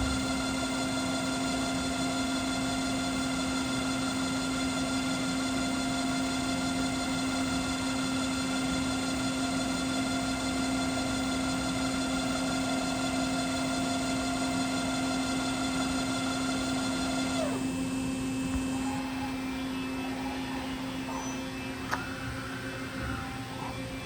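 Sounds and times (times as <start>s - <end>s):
high-pitched machine whine: 0.0s - 24.0s
machine low hum: 0.0s - 24.0s
machine winding down: 0.0s - 24.0s.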